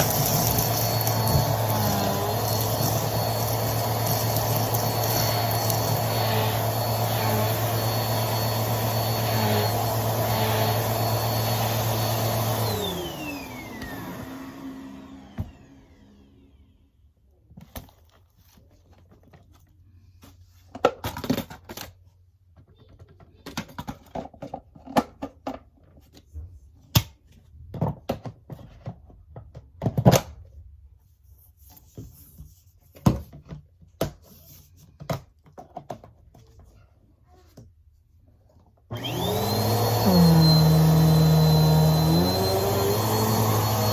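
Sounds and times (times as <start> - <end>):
objects knocking and thunking: 20.6 - 26.6.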